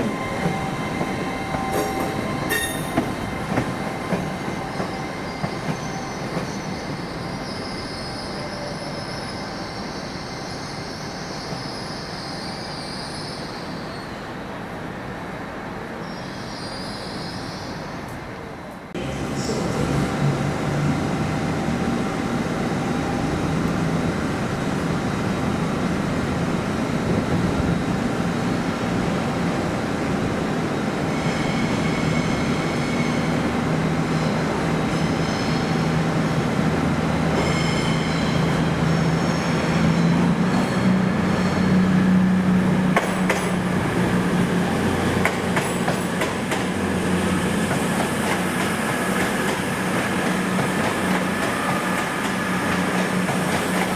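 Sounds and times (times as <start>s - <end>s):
high-pitched wheel squeal: 0.0s - 9.4s
train rolling noise: 0.0s - 53.9s.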